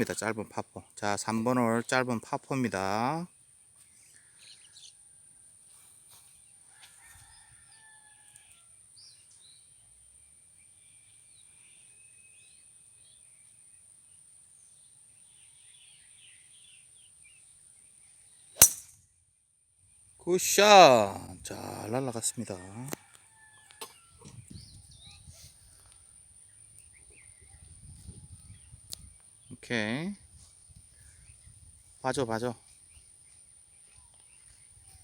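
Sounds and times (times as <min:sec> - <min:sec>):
faint bird chirps: 0:03.8 - 0:05.2, 0:06.2 - 0:18.6
golf club striking ball: 0:18.6 - 0:19.0.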